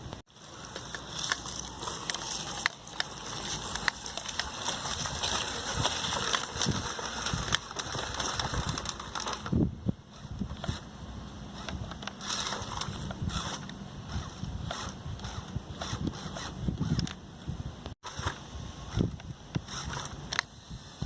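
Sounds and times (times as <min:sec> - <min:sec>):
tyres clicking and crunching: 0:00.0 - 0:10.9, 0:11.6 - 0:17.2
toy truck motor and gears: 0:00.4 - 0:17.2, 0:18.0 - 0:21.0.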